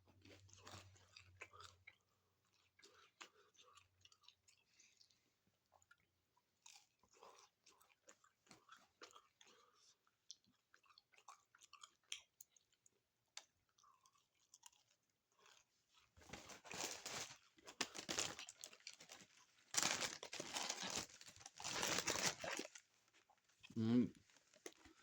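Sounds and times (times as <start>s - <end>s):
loud crunching of taco shell: 10.8s - 23.0s.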